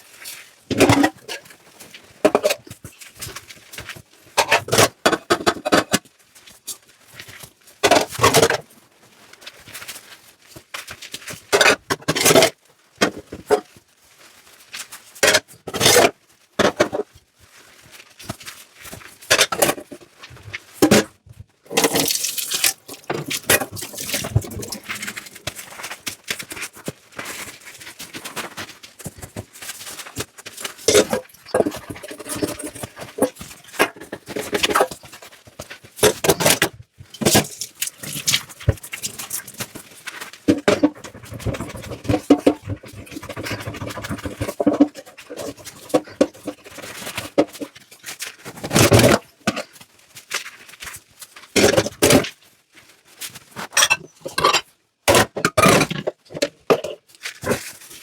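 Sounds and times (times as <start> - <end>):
scrubbing and scraping dishes: 0.7 - 1.5, 2.2 - 2.8, 3.9 - 6.0, 7.8 - 8.7, 11.5 - 13.7, 15.2 - 17.1, 19.2 - 35.3, 36.0 - 47.8, 48.5 - 49.8, 53.6 - 58.0
dishes and cutlery clinking: 53.7 - 57.0.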